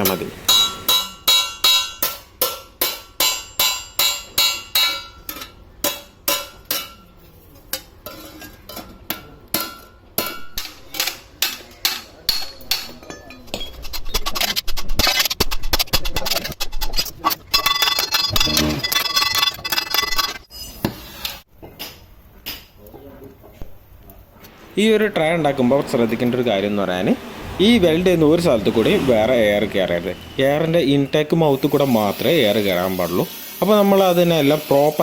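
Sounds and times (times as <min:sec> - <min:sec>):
harsh metalworking noise: 0:00.0 - 0:02.2, 0:24.5 - 0:35.0
hammer striking sheet metal: 0:00.1 - 0:05.2.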